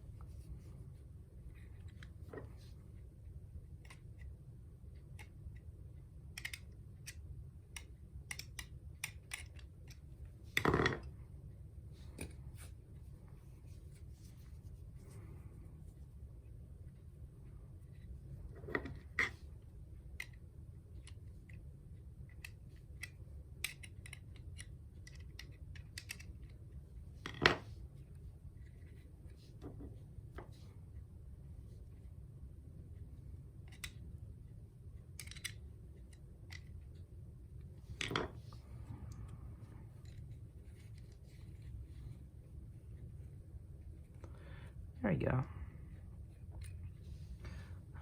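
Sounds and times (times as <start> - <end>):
small sharp clicks and taps: 6.3 - 10.0.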